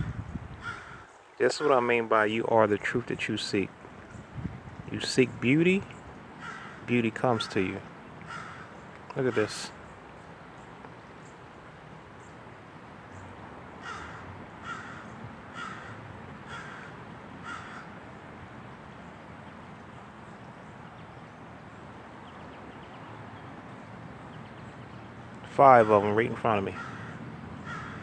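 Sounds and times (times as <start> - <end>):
bird calling: 0.0 - 4.3, 4.9 - 11.4, 13.8 - 18.0, 22.2 - 28.0
outdoor background noise: 0.0 - 28.0.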